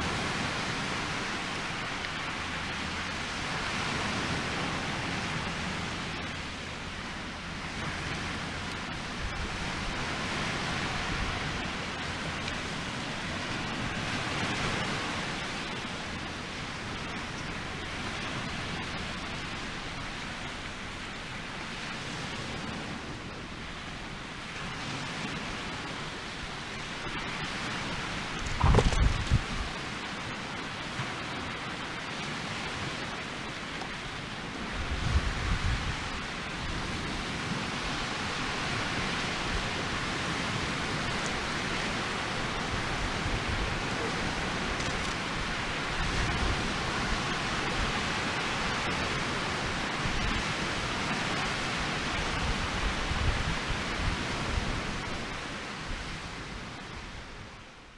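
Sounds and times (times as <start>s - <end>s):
fire burning with a hiss: 0.0s - 56.5s.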